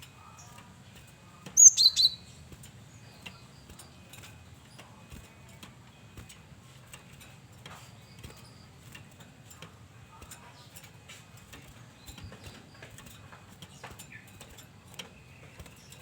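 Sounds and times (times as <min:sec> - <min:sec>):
bird chirps: 0:01.6 - 0:04.1.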